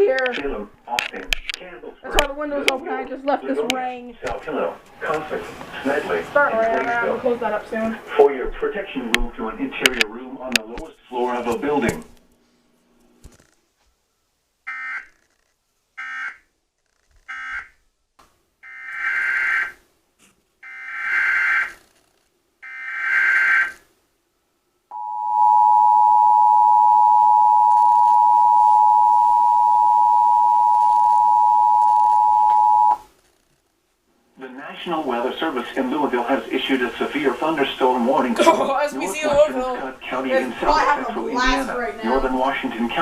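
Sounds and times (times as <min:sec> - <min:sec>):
two-tone attention signal: 0:24.9 - 0:33.0.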